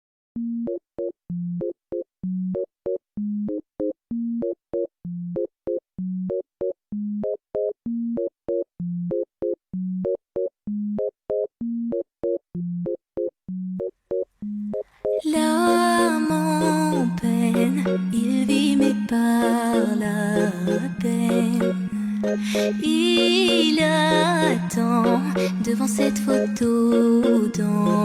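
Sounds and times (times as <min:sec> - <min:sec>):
electronic synth beeping tones: 0:15.8 - 0:28.0.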